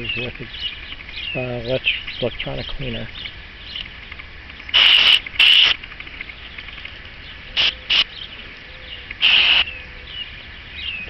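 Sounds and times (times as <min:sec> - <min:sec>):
aerosol spray hissing bursts: 0:04.7 - 0:05.8, 0:07.6 - 0:08.1, 0:09.2 - 0:09.7.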